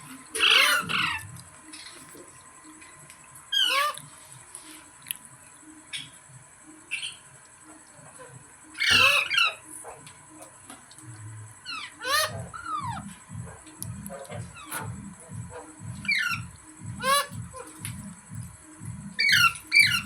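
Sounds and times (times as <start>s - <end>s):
parrot squawking: 0.3s - 1.4s, 3.5s - 4.1s, 8.2s - 10.0s, 11.6s - 17.8s, 19.1s - 20.0s
parrot chirps: 0.3s - 2.1s, 3.5s - 4.2s, 6.9s - 7.4s, 8.2s - 10.5s, 11.6s - 17.8s, 19.0s - 20.0s.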